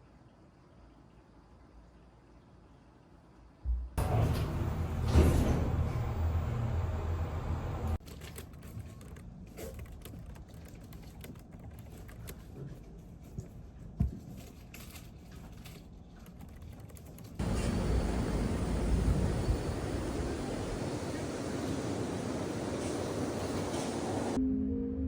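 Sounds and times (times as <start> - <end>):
typing on computer keyboard: 8.0 - 12.5, 16.2 - 17.4
steady low rumble: 17.4 - 24.4.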